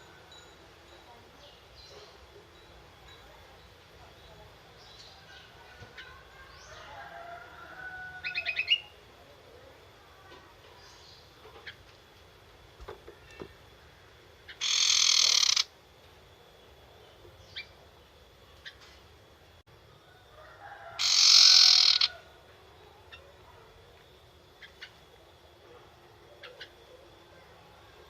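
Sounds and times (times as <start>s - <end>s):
barn owl screeching: 7.8s - 9.0s, 14.5s - 15.7s, 20.8s - 22.3s.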